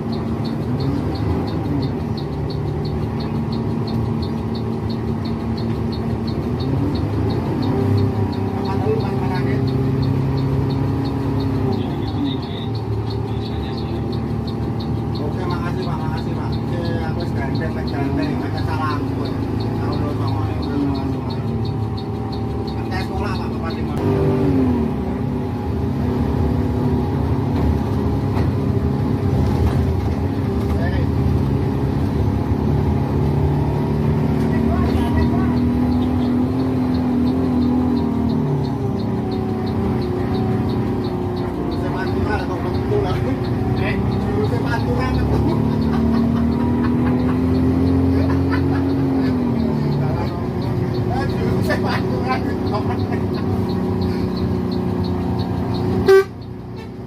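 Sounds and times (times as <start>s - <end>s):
bus engine running: 0.0s - 57.0s
turn signal ticking: 0.0s - 57.0s.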